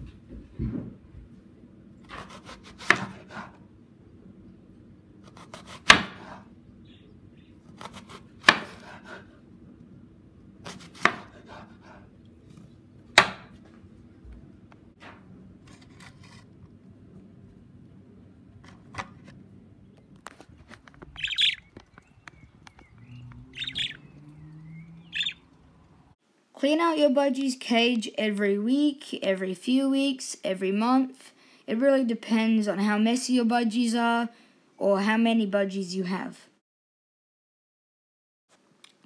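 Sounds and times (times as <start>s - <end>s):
knife chopping fruit on board: 2.0s - 3.6s, 5.3s - 6.4s, 7.6s - 9.3s, 10.6s - 12.1s, 13.1s - 13.7s.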